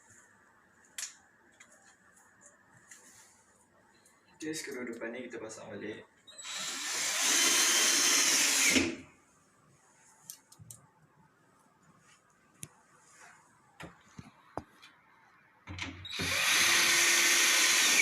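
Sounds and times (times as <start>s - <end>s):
power drill motor whirring: 6.3s - 9.0s, 16.0s - 18.0s.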